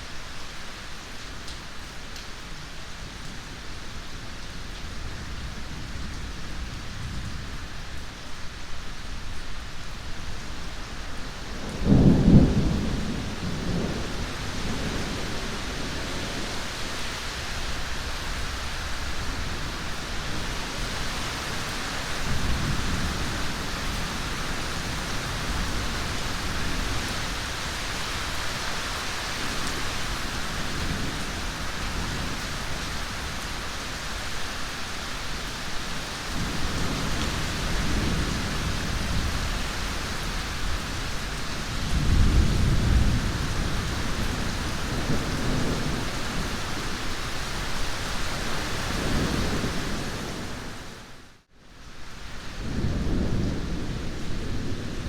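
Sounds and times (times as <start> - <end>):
heavy rain: 0.0 - 55.0
thunder clap and rumble: 11.6 - 16.6, 36.4 - 47.0.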